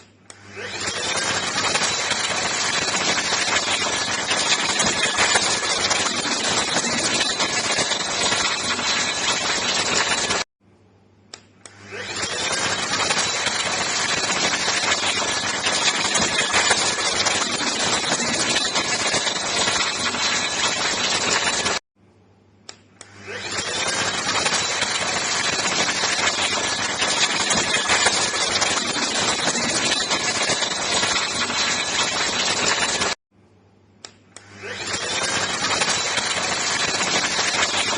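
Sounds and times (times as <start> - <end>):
handheld vacuum cleaner running: 0.4 - 10.5, 11.7 - 21.8, 23.0 - 33.2, 34.4 - 37.9
small click: 11.3 - 11.8, 22.6 - 23.2, 34.0 - 34.5.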